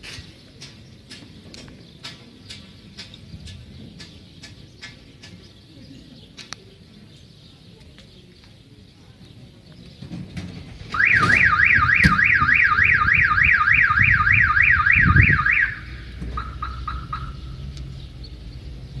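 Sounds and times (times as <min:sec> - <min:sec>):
car alarm chirps: 0:10.9 - 0:17.7
car alarm warbling siren: 0:11.0 - 0:17.6
low rumbling: 0:11.0 - 0:19.0.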